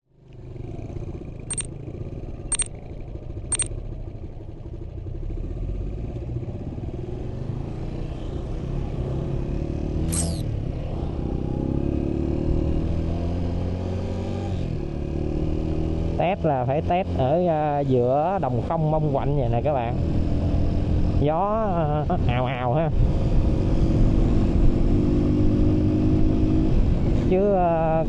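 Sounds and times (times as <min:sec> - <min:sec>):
motorbike engine running: 0:00.6 - 0:05.4.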